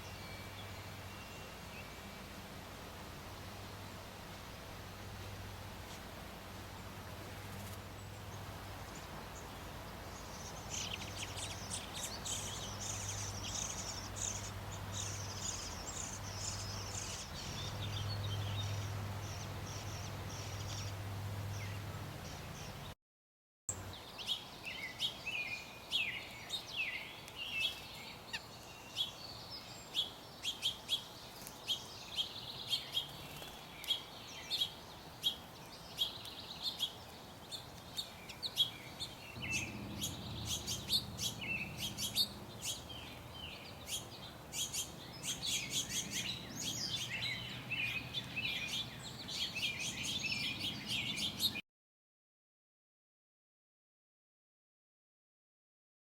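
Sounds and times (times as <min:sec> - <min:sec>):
birds chirping: 0:06.8 - 0:23.0, 0:23.7 - 0:51.6.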